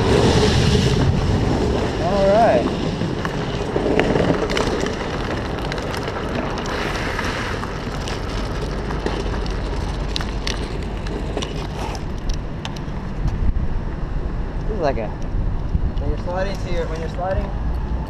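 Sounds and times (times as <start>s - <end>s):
bike tyres on rough ground: 0.0s - 13.8s
wind buffeting microphone: 0.0s - 18.0s.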